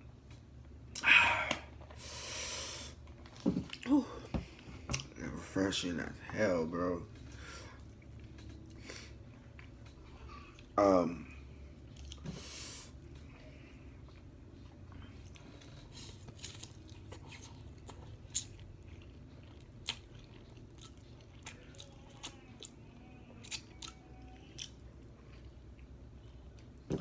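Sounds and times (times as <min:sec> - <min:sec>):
person chewing: 0:11.9 - 0:12.3, 0:14.0 - 0:27.0.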